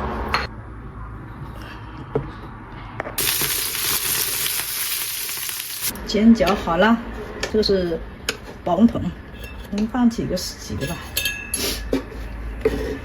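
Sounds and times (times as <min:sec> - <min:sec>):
dumplings sizzling in oil: 0:03.2 - 0:05.9.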